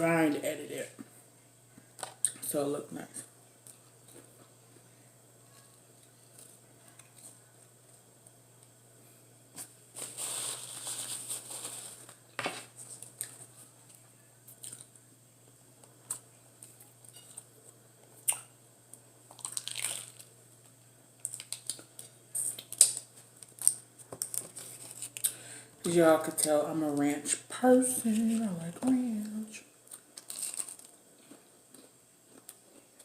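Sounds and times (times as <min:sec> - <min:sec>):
paper packaging crinkling: 0:09.9 - 0:13.4, 0:21.2 - 0:25.3, 0:30.2 - 0:31.0
chewing and crunching food: 0:12.9 - 0:15.1, 0:19.3 - 0:20.4, 0:21.2 - 0:25.4, 0:29.8 - 0:33.0
small crackles and clicks: 0:15.8 - 0:25.4.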